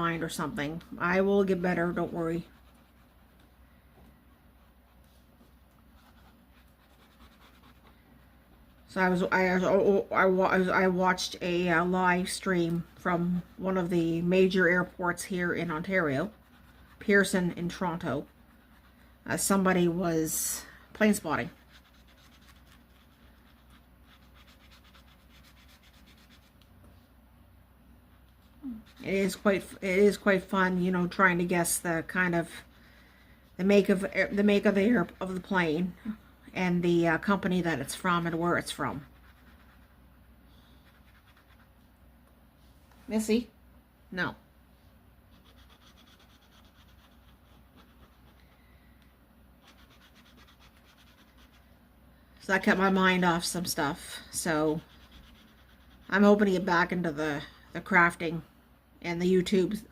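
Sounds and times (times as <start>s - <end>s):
scratching strokes on paper: 0.2s - 3.6s, 4.2s - 9.8s, 10.5s - 20.4s, 21.0s - 26.6s, 28.1s - 32.8s, 37.2s - 41.8s, 45.3s - 48.5s, 49.6s - 51.6s, 52.7s - 56.7s.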